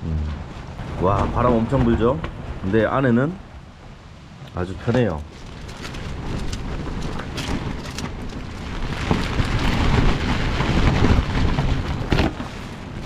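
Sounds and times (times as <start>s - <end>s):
wind gusting: 0.0s - 13.0s
tent fabric flapping: 5.2s - 13.0s.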